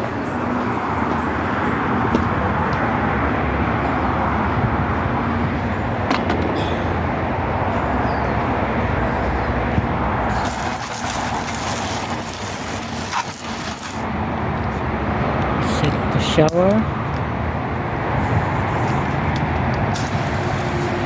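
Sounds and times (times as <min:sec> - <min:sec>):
hose water spraying: 0:10.3 - 0:14.1, 0:19.9 - 0:21.0
sharp hiss: 0:10.3 - 0:14.1, 0:19.9 - 0:21.0.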